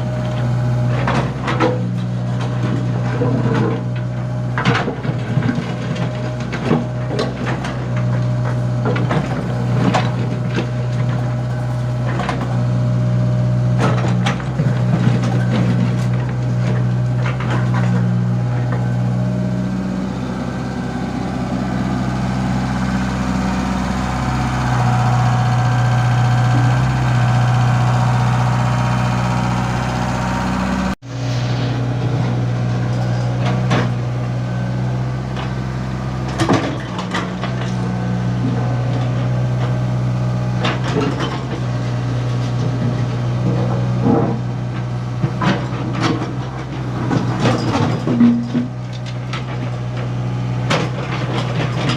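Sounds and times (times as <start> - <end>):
excavator diesel engine running: 0.0 - 51.9
metallic clanks and knocks: 45.2 - 51.9.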